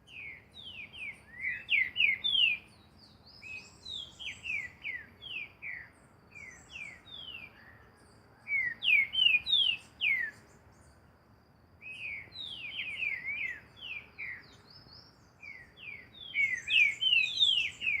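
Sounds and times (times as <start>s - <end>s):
bird singing whistled notes: 0.0s - 11.1s, 11.8s - 18.0s
faint high-pitched chirps: 0.0s - 18.0s.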